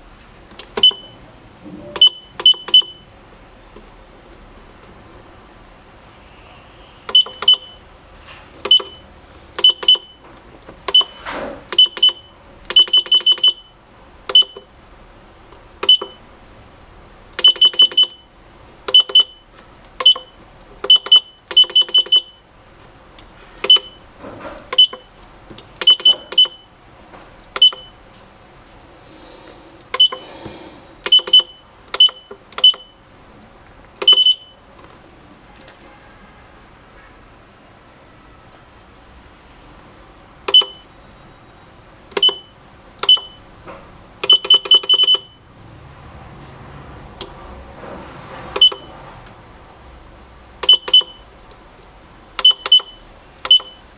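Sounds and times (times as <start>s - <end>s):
kitchen timer key beeps: 0.8s - 1.2s, 1.8s - 3.0s, 7.1s - 7.8s, 8.7s - 9.0s, 9.6s - 10.2s, 10.9s - 13.7s, 14.3s - 14.7s, 15.8s - 16.2s, 17.4s - 18.2s, 18.9s - 19.4s, 20.0s - 22.4s, 23.6s - 24.0s, 24.7s - 25.1s, 25.8s - 26.7s, 27.6s - 28.0s, 29.9s - 30.3s, 31.0s - 33.0s, 34.0s - 34.5s, 40.5s - 40.9s, 42.2s - 43.4s, 44.2s - 45.4s, 48.6s - 48.9s, 50.6s - 51.2s, 52.4s - 53.8s.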